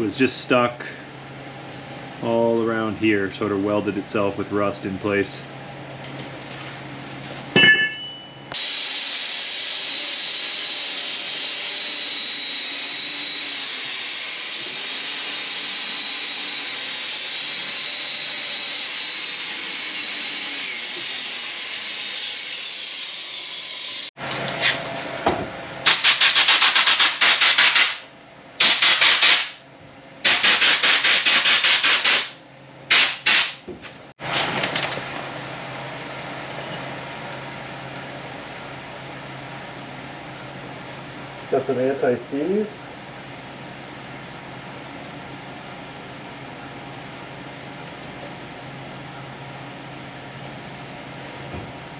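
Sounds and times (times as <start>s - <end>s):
power tool running: 8.6s - 24.4s, 25.8s - 29.6s.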